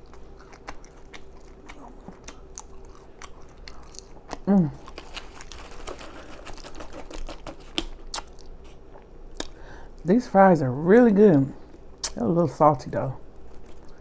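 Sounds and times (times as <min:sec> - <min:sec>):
open-mouth chewing and lip smacking: 0:00.0 - 0:09.6, 0:12.0 - 0:12.2, 0:13.3 - 0:14.0.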